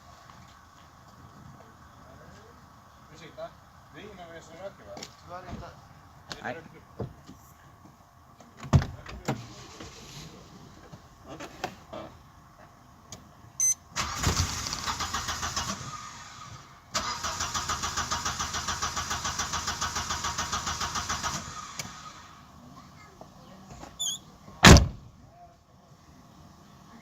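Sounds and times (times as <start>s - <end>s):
engine cranking on starter: 9.2s - 10.6s, 14.0s - 22.5s.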